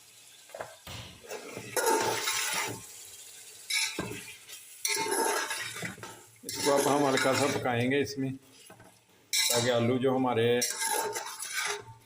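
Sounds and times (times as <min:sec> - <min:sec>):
metal spoon scraping a pan: 0:01.3 - 0:02.8, 0:03.7 - 0:07.7, 0:08.6 - 0:10.0, 0:10.6 - 0:12.0.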